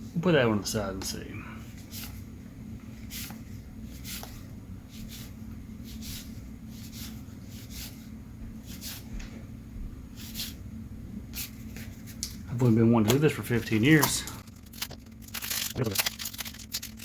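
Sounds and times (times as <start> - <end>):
low hum: 0.0 - 17.0
trading cards sliding: 1.8 - 2.2, 3.0 - 9.1.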